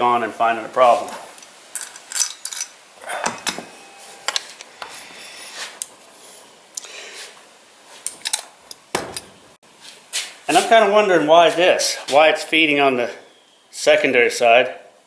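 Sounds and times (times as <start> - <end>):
metal clinks and scrapes: 1.8 - 4.4.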